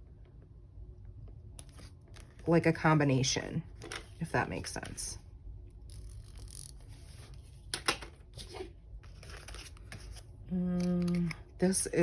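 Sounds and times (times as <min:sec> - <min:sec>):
paper rustling: 0:08.4 - 0:10.2.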